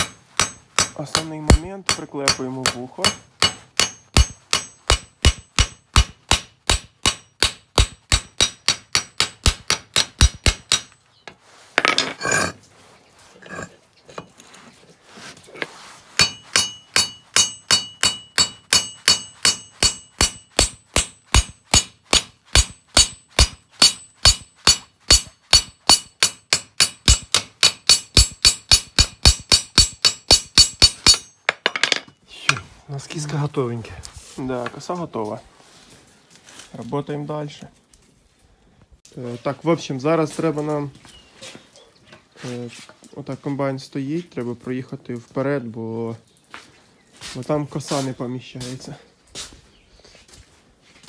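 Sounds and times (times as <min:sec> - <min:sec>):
hammer ringing on metal: 0:00.0 - 0:10.9, 0:16.2 - 0:32.0
metal scrape: 0:11.4 - 0:17.6.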